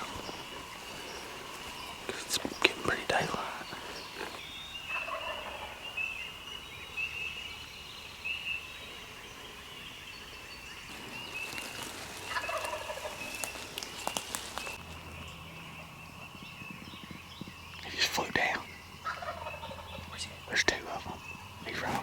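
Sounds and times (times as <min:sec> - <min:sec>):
turkey gobbling: 0:03.8 - 0:06.0, 0:10.9 - 0:14.8, 0:19.0 - 0:20.2.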